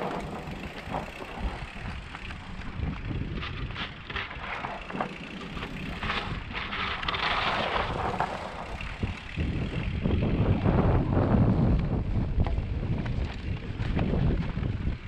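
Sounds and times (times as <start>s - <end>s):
bike rattling over dirt: 0.0s - 15.0s
wind rumble on microphone: 0.0s - 15.0s.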